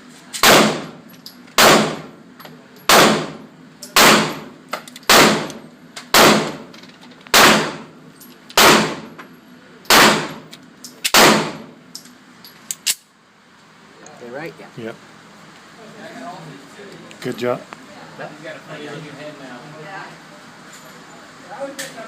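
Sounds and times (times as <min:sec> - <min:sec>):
handgun shots: 0:00.4 - 0:01.0, 0:01.6 - 0:02.1, 0:02.9 - 0:04.5, 0:05.1 - 0:06.7, 0:07.3 - 0:07.9, 0:08.6 - 0:09.1, 0:09.9 - 0:11.7.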